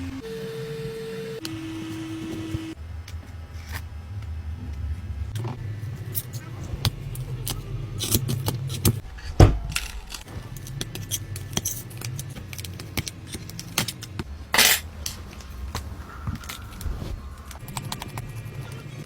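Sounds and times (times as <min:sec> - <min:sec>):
heavy thump: 0:09.0 - 0:10.3.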